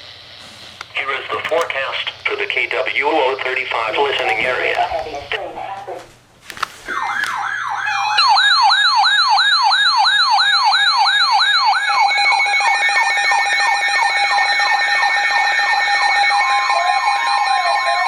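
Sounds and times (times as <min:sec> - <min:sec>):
electronic siren yelping: 0:06.9 - 0:18.0
second faster siren yelp: 0:06.9 - 0:18.0.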